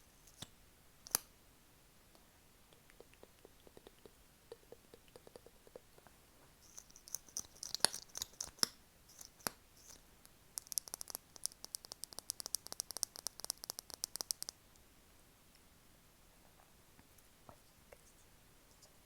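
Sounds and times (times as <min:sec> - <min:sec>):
asmr clicking: 0:10.6 - 0:14.6.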